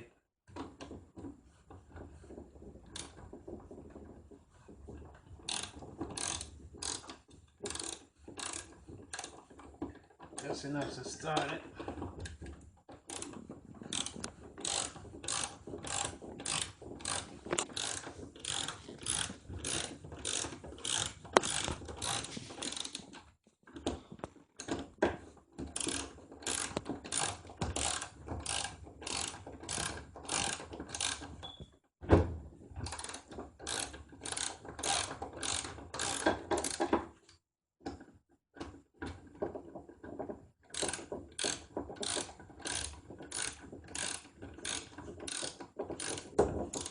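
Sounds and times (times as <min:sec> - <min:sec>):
ratchet wrench clicking: 0:17.8 - 0:23.0, 0:25.8 - 0:31.2.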